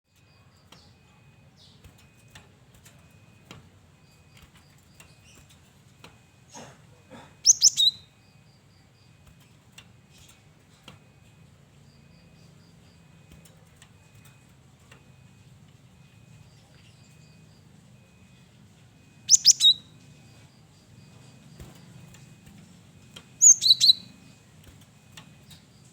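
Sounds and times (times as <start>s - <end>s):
faint chirps and clicks: 0.1s - 17.7s, 18.3s - 25.9s
bird calling sharp high notes: 23.4s - 24.2s.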